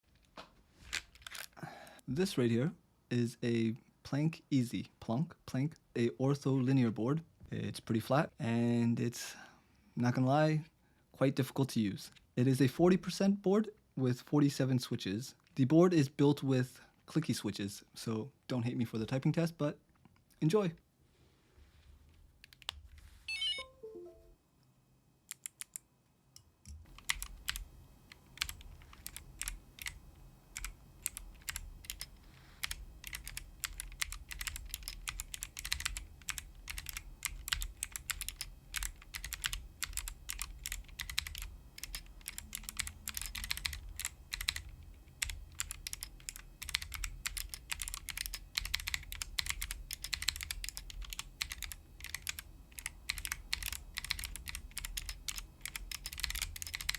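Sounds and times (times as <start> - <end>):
clicky mechanical keyboard typing: 25.3 - 25.8, 26.9 - 56.9.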